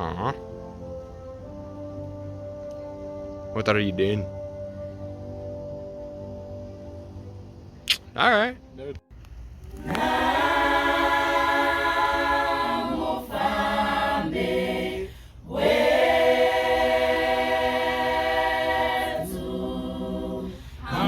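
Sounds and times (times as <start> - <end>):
choir singing a cappella: 9.7 - 21.0.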